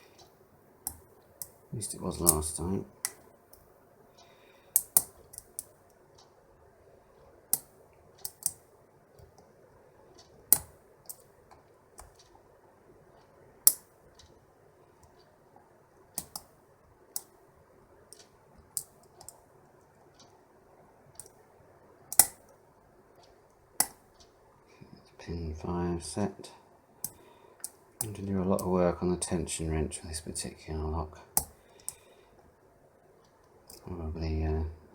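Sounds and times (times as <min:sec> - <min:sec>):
lock pick clicking on pins: 0:04.7 - 0:05.7, 0:07.5 - 0:08.6, 0:10.4 - 0:11.3, 0:13.6 - 0:13.9, 0:16.2 - 0:16.5, 0:22.1 - 0:22.5, 0:31.4 - 0:32.0.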